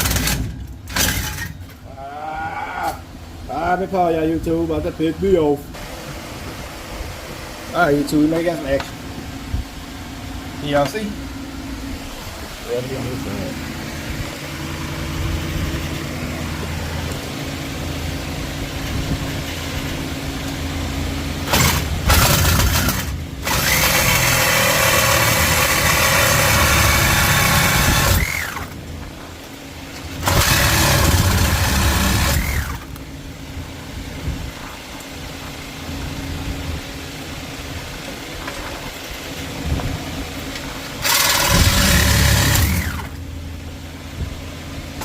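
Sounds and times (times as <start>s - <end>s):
steady low hum: 0.0s - 45.0s
angle grinder cutting metal: 21.5s - 28.6s, 30.2s - 32.8s, 41.0s - 43.1s.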